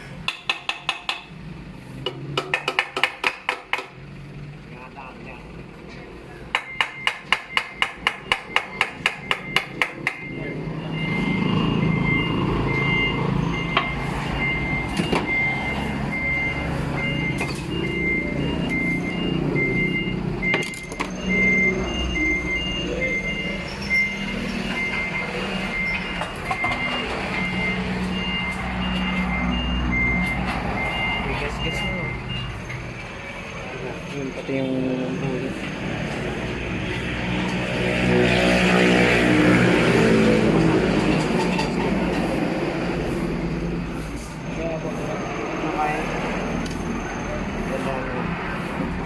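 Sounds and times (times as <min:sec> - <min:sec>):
engine running: 0:00.9 - 0:49.0
sharp knocks: 0:02.1 - 0:04.0
reversing alarm beeping: 0:04.8 - 0:48.7.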